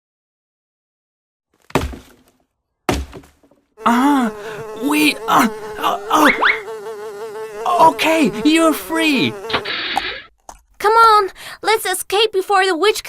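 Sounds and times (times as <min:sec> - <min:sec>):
insect-like buzzing drone: 0:03.8 - 0:10.3.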